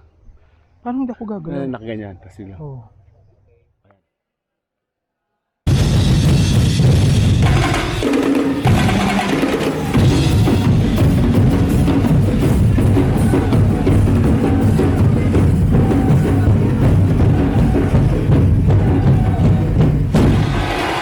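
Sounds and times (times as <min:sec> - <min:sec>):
percussion music rapid drumming: 0:05.7 - 0:21.0.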